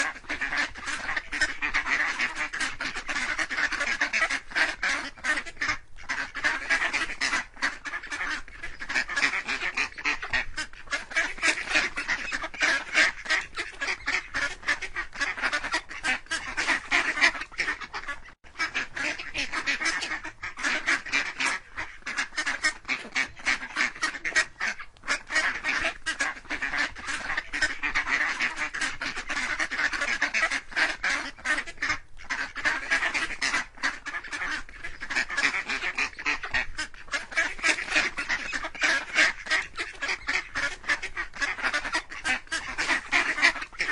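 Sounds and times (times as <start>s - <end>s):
ducks quacking: 0.0s - 43.9s.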